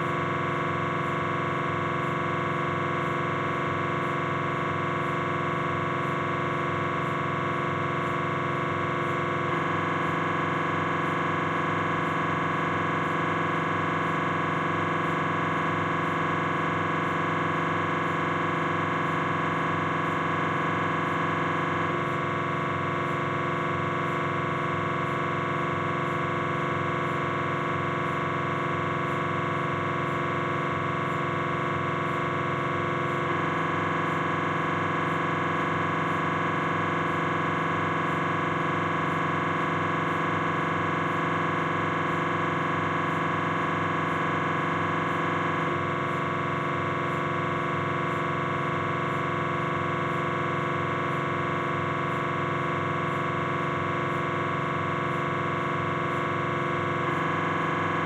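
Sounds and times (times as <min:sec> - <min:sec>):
mri scanner pulsing buzz: 0:00.0 - 0:58.0.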